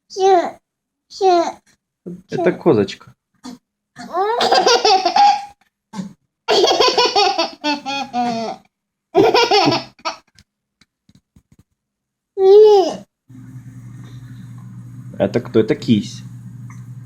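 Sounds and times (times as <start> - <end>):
small child laughing: 4.1 - 5.6, 6.5 - 10.3.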